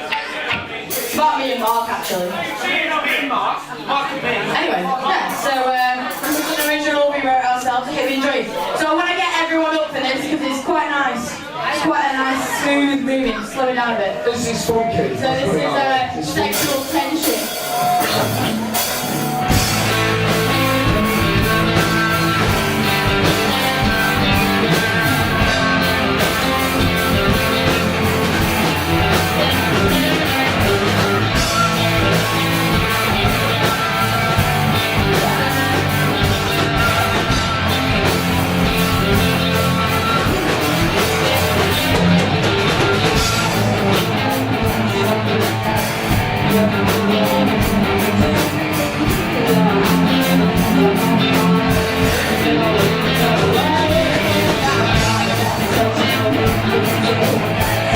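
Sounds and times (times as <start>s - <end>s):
guitar: 0.0s - 57.9s
live rock band playing: 5.3s - 10.3s, 14.1s - 57.9s
steady drum beat: 16.4s - 57.9s.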